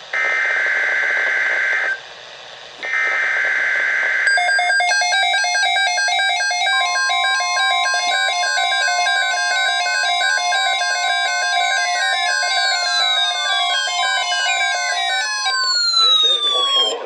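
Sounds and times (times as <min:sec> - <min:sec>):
warbling electronic alert: 0:04.3 - 0:17.0
steady alert tone: 0:04.9 - 0:17.0.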